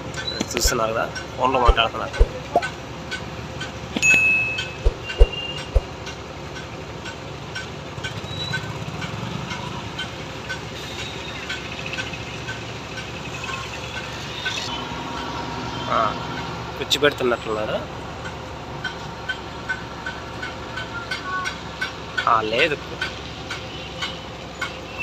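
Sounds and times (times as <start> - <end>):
sharp knocks: 4.0 - 5.9.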